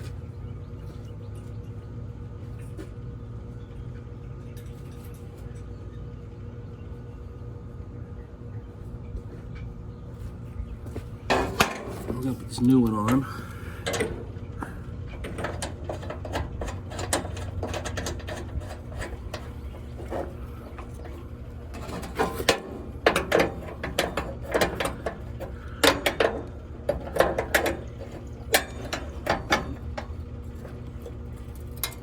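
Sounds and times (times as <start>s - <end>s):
metal clicking and clattering: 11.3s - 13.2s, 13.8s - 14.4s, 15.1s - 32.0s.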